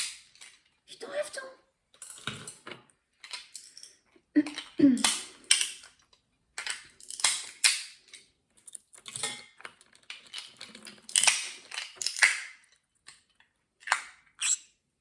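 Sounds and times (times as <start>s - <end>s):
walnut shells cracking: 6.6s - 13.2s.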